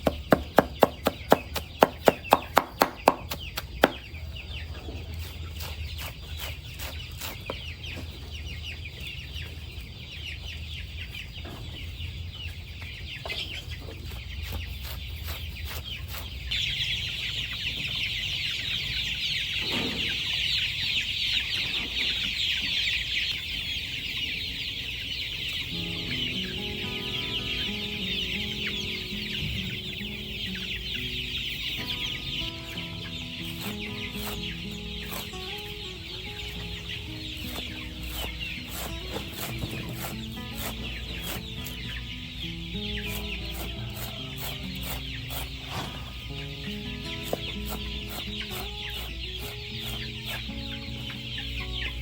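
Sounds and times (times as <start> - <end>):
chickens clucking: 0.0 - 52.0
quick sharp taps: 0.1 - 4.0.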